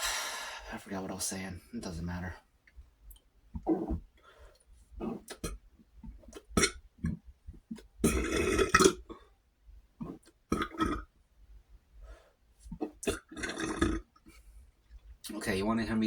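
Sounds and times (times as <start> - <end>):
man burping: 8.1 - 9.1.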